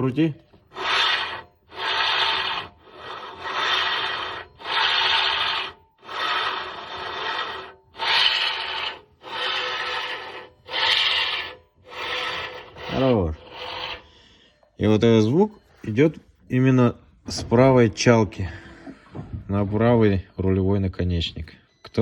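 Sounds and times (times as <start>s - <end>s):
steering rack grinding rub: 0.0s - 14.5s.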